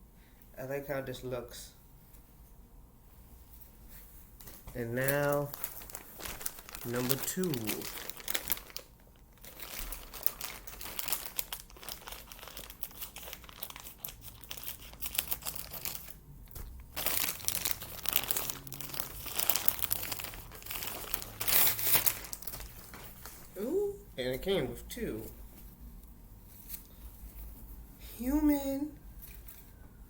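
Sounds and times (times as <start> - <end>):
packaging crinkling and rustling: 4.4 - 23.6.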